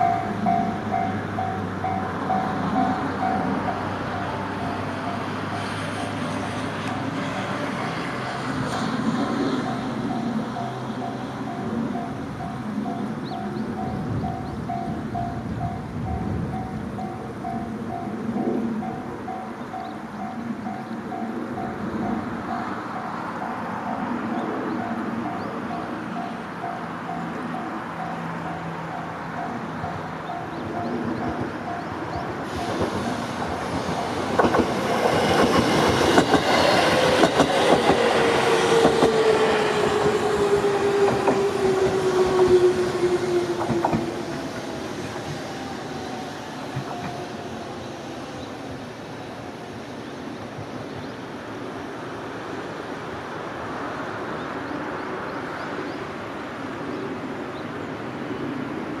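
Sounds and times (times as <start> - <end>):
train rumble: 0.0 - 59.0
train wheels clattering over rail joints: 30.5 - 45.4, 46.4 - 47.5
train whine falling in pitch: 32.5 - 48.7.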